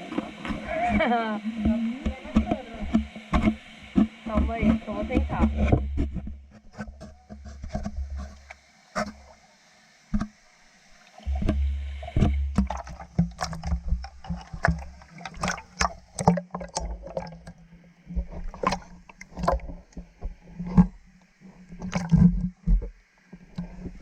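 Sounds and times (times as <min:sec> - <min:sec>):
water splashing and sloshing: 0:00.0 - 0:24.0.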